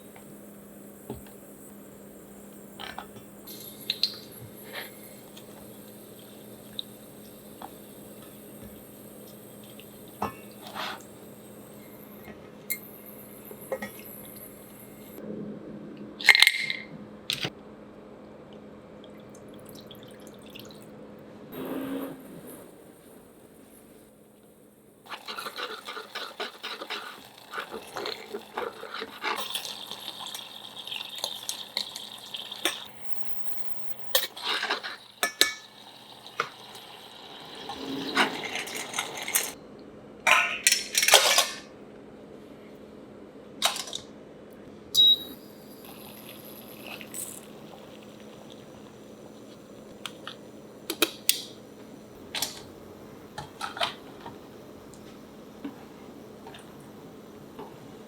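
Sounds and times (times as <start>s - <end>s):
clams bubbling and hissing: 0.0s - 12.2s, 25.0s - 39.3s, 45.8s - 50.8s.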